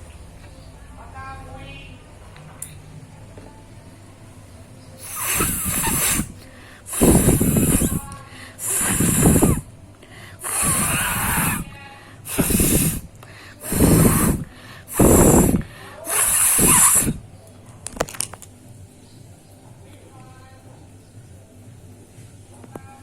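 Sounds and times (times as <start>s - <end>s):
person blowing nose: 5.0s - 9.7s, 10.4s - 17.2s.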